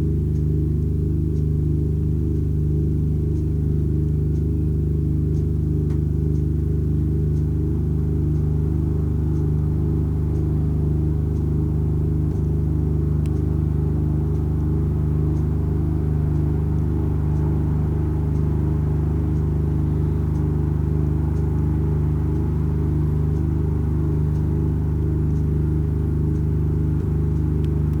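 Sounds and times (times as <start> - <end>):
synthesized drone with flutter: 5.6 - 28.0.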